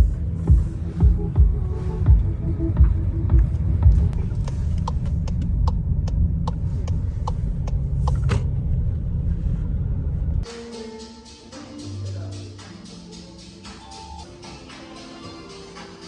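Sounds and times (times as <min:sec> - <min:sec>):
steady low rumble: 0:00.0 - 0:10.4.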